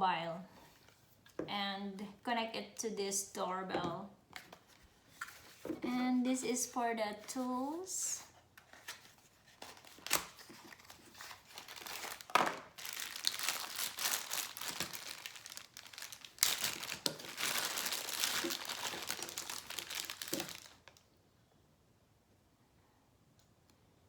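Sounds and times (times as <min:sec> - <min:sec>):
packaging crinkling: 0:08.8 - 0:21.0.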